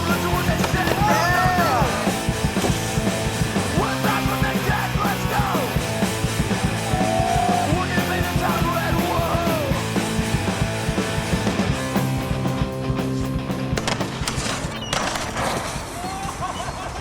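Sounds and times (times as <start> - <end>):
shouted vocals: 0.0 - 2.2, 3.7 - 10.0
punk rock music: 0.0 - 17.0.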